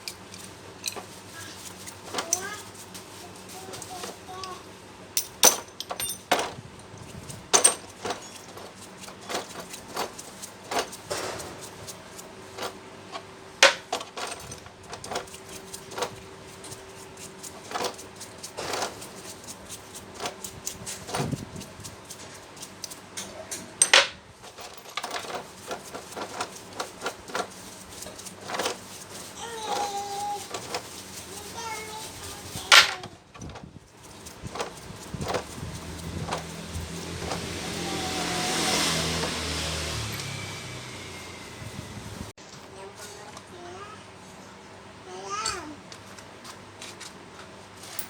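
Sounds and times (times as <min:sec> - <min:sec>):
metal tools clinking and knocking: 0:00.0 - 0:01.1, 0:05.2 - 0:06.6, 0:07.2 - 0:11.0, 0:23.2 - 0:27.5.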